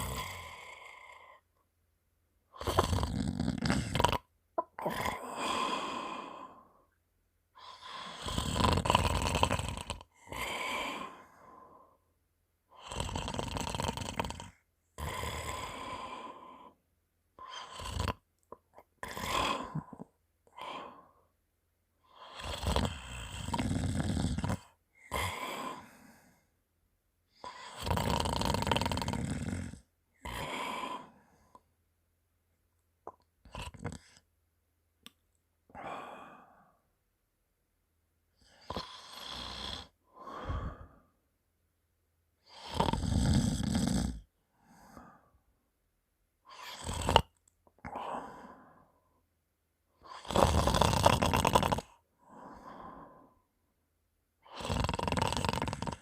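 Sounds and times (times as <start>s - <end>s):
phlegmy snoring: 0.0s - 1.4s, 2.6s - 6.7s, 7.6s - 11.8s, 12.8s - 16.8s, 17.4s - 21.1s, 22.1s - 26.1s, 27.3s - 31.6s, 33.4s - 34.2s, 38.4s - 41.0s, 42.4s - 45.1s, 46.5s - 48.8s, 50.0s - 53.4s, 54.4s - 56.0s.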